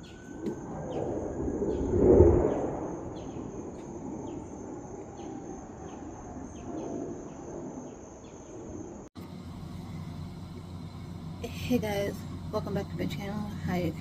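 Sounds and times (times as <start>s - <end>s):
insects droning: 0.0s - 14.0s.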